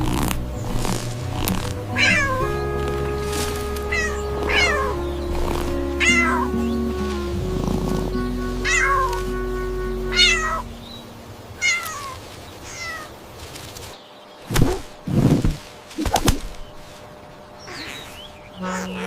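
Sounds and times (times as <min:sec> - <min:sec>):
cat meowing: 0:02.0 - 0:02.5, 0:03.9 - 0:05.0, 0:06.0 - 0:06.6, 0:08.6 - 0:09.1, 0:10.1 - 0:10.6, 0:11.6 - 0:13.1, 0:17.7 - 0:19.0.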